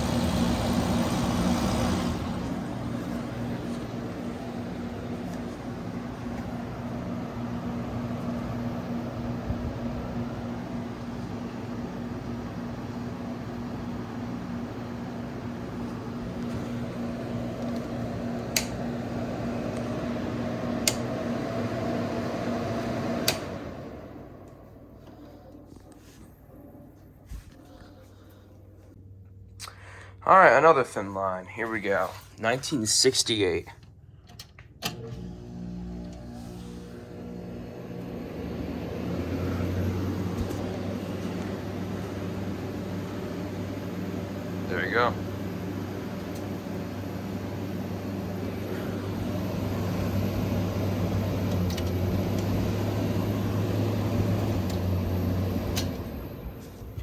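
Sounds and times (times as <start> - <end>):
air conditioner fan rushing: 0.0 - 57.0
air conditioner hum: 0.0 - 57.0
air conditioner click: 15.7 - 25.6, 34.3 - 35.3, 46.1 - 47.0, 51.2 - 52.8, 55.6 - 56.1.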